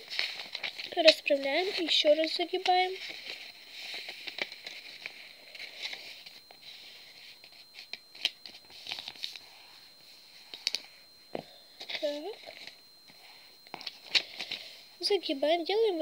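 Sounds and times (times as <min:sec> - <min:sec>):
paper rustling and crackling: 0:00.0 - 0:09.4, 0:13.7 - 0:14.6
faint high-pitched whine: 0:00.0 - 0:16.0.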